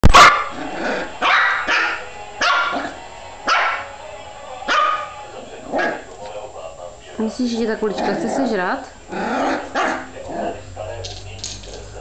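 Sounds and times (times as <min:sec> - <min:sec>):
puppy barking: 0:00.0 - 0:00.6, 0:01.2 - 0:03.9, 0:04.7 - 0:06.1, 0:09.3 - 0:10.6.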